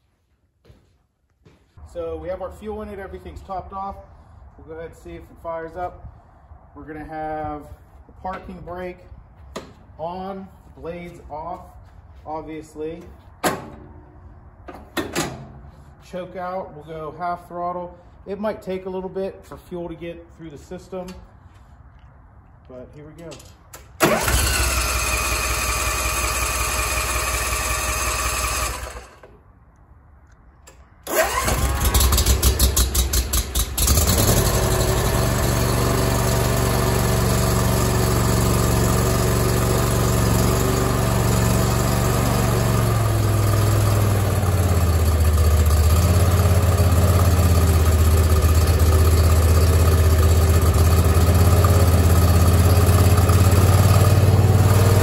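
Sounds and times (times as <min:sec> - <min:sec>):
mower engine running: 0:24.0 - 0:29.3, 0:31.1 - 0:55.0
electric starter cranking: 0:24.0 - 0:29.4, 0:31.0 - 0:55.0.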